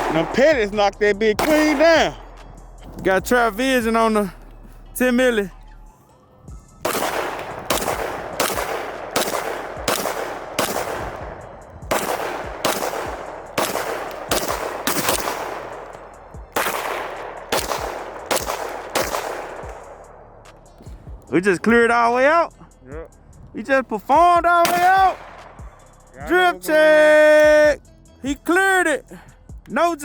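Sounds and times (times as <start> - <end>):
pistol shots: 0.0 - 3.0, 6.8 - 21.3, 24.6 - 26.0.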